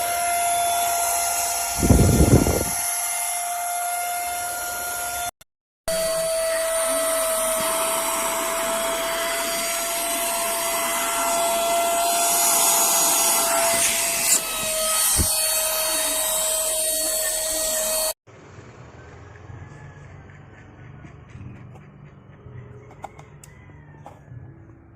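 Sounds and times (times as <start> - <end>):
handheld vacuum whine: 0.0 - 5.3, 5.9 - 18.2.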